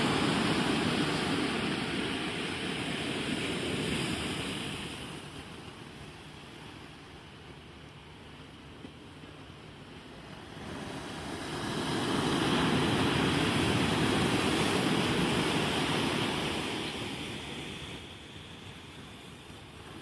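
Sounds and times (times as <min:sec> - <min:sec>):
wave breaking on shore: 0:00.0 - 0:07.4, 0:09.3 - 0:20.0.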